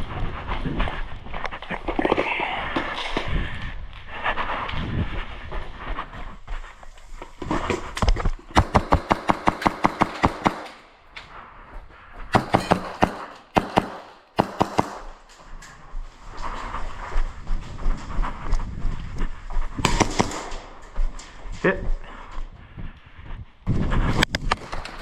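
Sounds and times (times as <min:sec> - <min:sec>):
airsoft guns firing: 0:08.5 - 0:11.0, 0:12.3 - 0:15.3, 0:19.8 - 0:20.9, 0:24.6 - 0:25.0.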